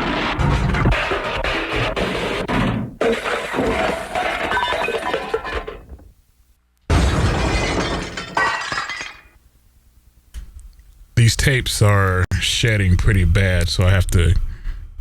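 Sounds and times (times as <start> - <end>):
glass crashing with tinkling shards: 3.2 - 5.9, 6.9 - 9.4.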